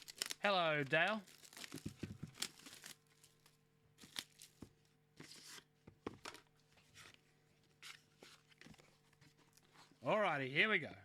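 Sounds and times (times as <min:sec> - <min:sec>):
card packaging crinkling and tearing: 0:00.0 - 0:05.5.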